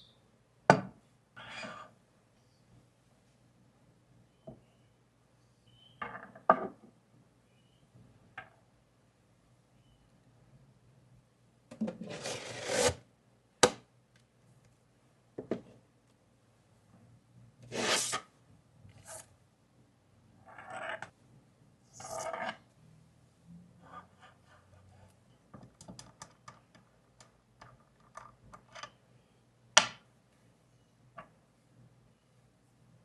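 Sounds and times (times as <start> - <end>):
grinder parts scraping and sliding: 11.9 - 13.0.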